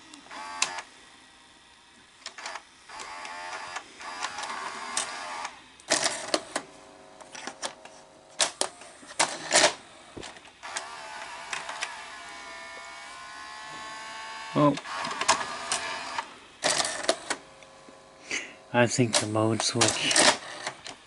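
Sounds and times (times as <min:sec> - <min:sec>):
small motor whirring: 0:00.1 - 0:00.9, 0:02.2 - 0:06.7, 0:08.7 - 0:18.6, 0:19.9 - 0:21.0
mechanical clicks and clunks: 0:19.0 - 0:21.0.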